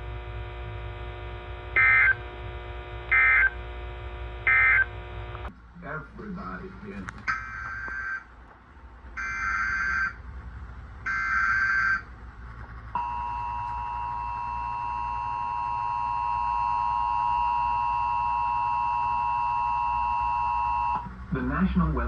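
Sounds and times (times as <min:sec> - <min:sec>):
buzzy digital data bursts: 0:00.0 - 0:05.5.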